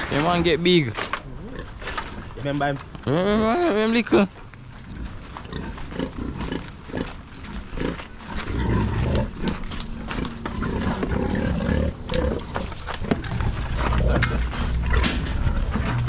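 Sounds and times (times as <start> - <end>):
dog growling: 7.8 - 16.0.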